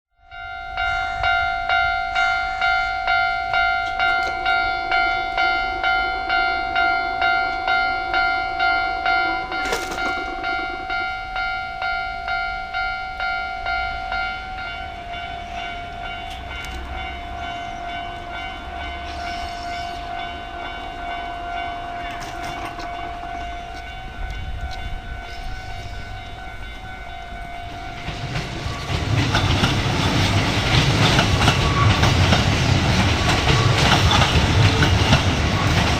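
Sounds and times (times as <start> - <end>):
level crossing alarm bell: 0.2 - 35.9
train wheels clattering on rails: 9.1 - 11.5, 15.6 - 21.2, 22.0 - 35.9.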